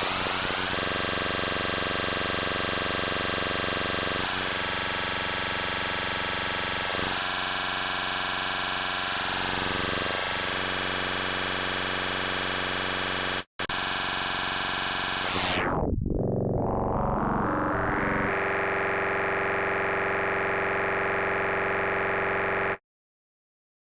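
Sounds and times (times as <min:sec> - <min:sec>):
buzzy synthesizer drone: 0:13.8 - 0:22.8.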